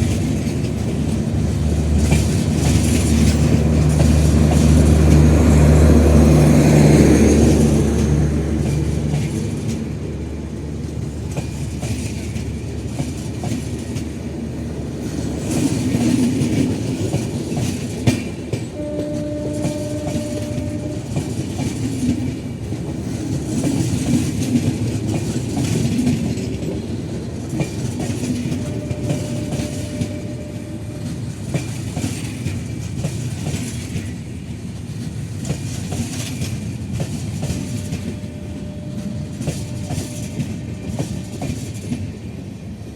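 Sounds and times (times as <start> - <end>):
train wheels clattering on rails: 0.0 - 42.9
faint held tone: 37.8 - 41.2.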